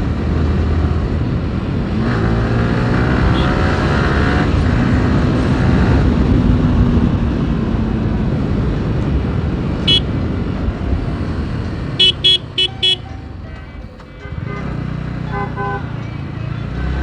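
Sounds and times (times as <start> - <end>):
motorcycle engine and road rumble: 0.0 - 17.0
horn beeps: 3.2 - 3.8, 9.8 - 10.3, 11.8 - 17.0.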